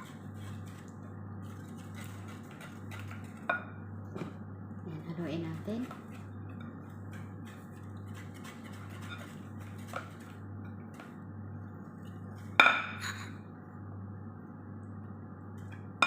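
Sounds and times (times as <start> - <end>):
utensil stirring batter: 0.0 - 3.8, 5.1 - 12.6.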